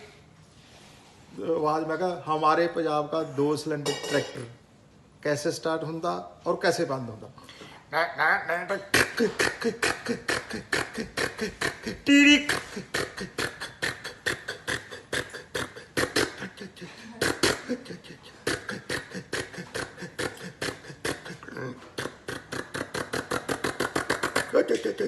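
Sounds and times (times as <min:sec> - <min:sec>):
man imitating tractor engine: 0:07.9 - 0:25.0
pitched vocal whine: 0:07.9 - 0:25.0.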